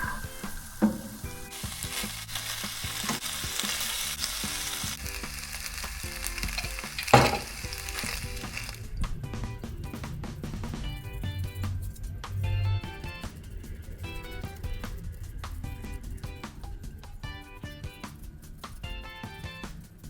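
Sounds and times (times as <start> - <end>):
food sizzling in a pan: 0.0 - 8.8.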